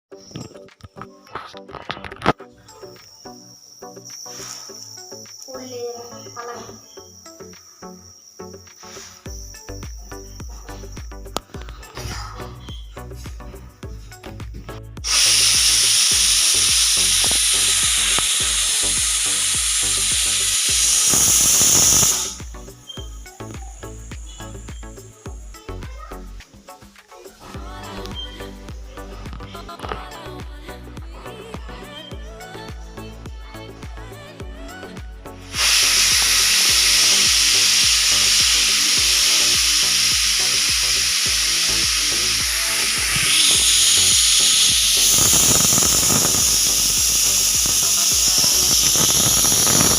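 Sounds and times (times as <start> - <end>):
faint music: 0.1 - 49.9
pressure cooker whistle hissing: 3.2 - 11.6, 12.6 - 13.0, 15.0 - 25.6, 28.1 - 28.6, 35.4 - 49.9.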